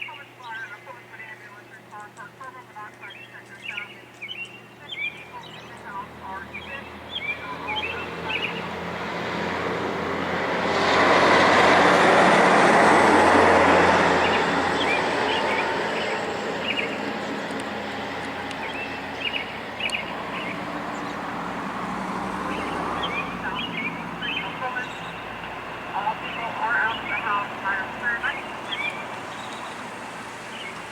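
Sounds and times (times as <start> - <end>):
birds chirping: 0.0 - 9.3, 13.6 - 30.9
vehicle driving past: 7.0 - 26.0.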